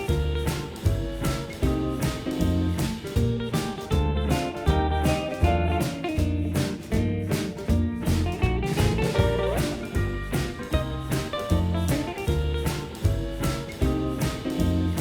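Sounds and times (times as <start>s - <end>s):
upbeat guitar music with drums: 0.0s - 15.0s.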